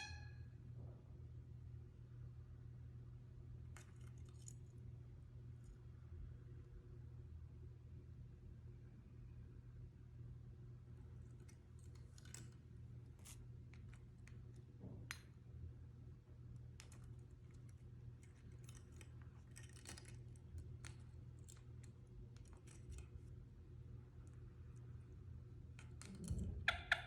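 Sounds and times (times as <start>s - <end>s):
low steady hum: 0.0s - 27.0s
faint small clicks and taps: 11.2s - 15.4s, 16.5s - 23.4s.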